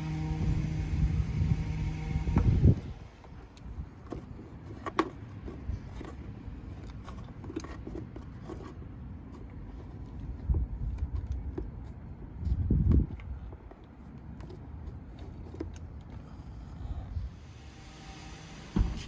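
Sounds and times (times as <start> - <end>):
steady low rumble: 0.0 - 4.0, 16.2 - 19.0
hands scraping cable: 0.0 - 16.8.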